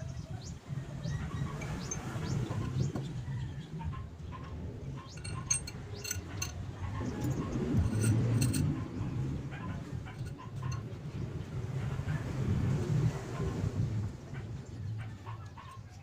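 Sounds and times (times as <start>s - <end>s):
light metallic clinks: 1.5s - 2.4s, 5.1s - 9.1s, 10.0s - 10.9s.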